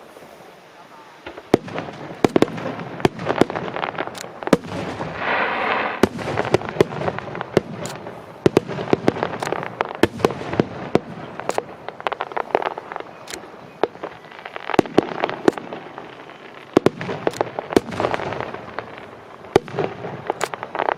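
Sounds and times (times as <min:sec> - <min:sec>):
fireworks bangs: 0:00.0 - 0:20.9
fireworks crackling: 0:00.0 - 0:20.9.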